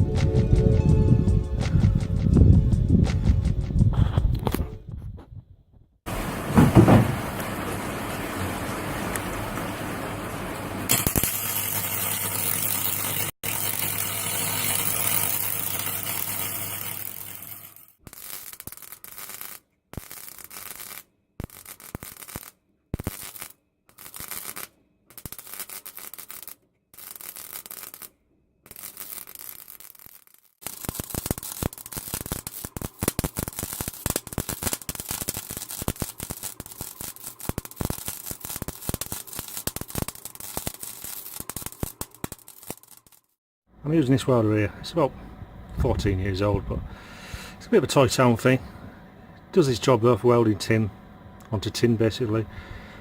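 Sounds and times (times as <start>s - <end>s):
welder crackling on sheet steel: 6.1s - 43.4s.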